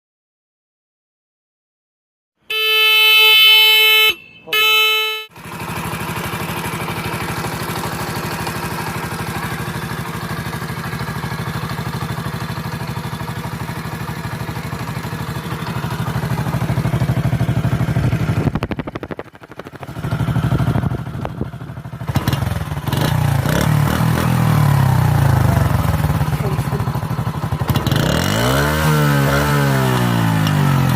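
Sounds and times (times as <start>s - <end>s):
motorcycle horn honking: 2.5s - 5.6s
motorcycle engine running: 3.7s - 30.9s
motorcycle engine revving: 3.8s - 30.9s.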